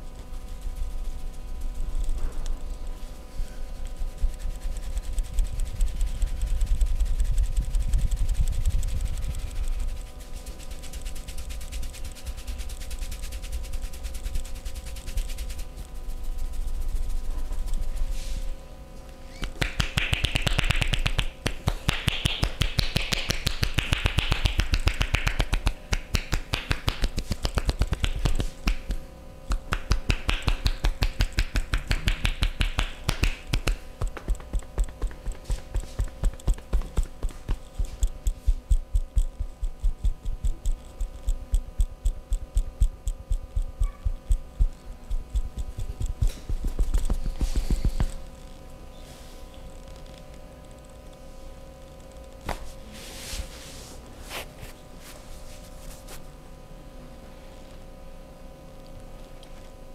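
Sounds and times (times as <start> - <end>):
hands slapping body: 19.4 - 39.1, 43.7 - 48.2, 52.5 - 52.7
rubbing hiss: 45.6 - 48.3.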